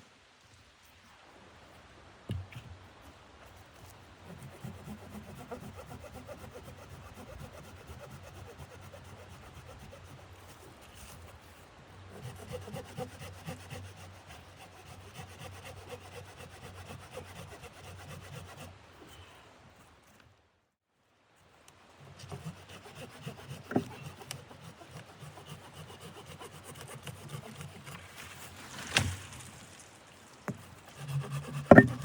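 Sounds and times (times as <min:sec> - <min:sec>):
rasping scraping strokes: 0:04.3 - 0:18.8, 0:22.0 - 0:32.0.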